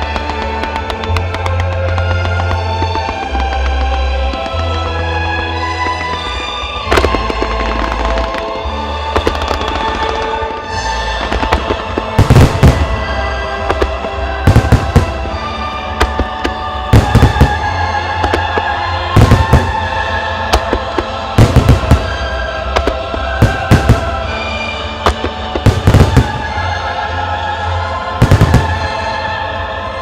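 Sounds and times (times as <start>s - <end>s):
music with long held notes: 0.0s - 30.0s
firework shells bursting: 11.2s - 26.6s.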